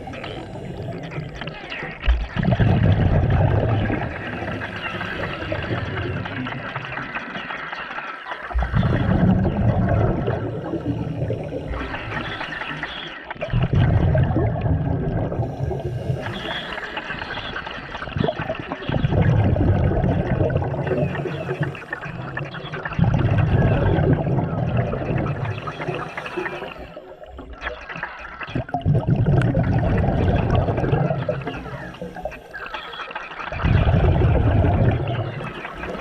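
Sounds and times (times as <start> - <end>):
exhaled bubbles gurgling: 0.0 - 36.0
regulator inhale hiss: 15.4 - 17.0, 25.6 - 27.0.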